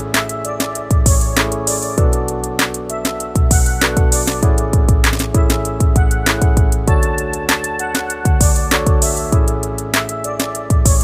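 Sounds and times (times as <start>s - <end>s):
deep kick drum: 0.9s - 1.4s, 3.4s - 7.2s.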